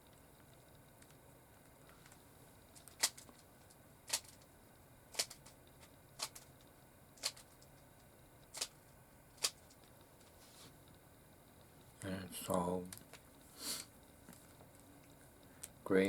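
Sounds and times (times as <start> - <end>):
puzzle cube clicking as turned: 2.8 - 3.3, 5.1 - 5.6, 6.2 - 6.5, 7.2 - 7.6, 8.5 - 8.7.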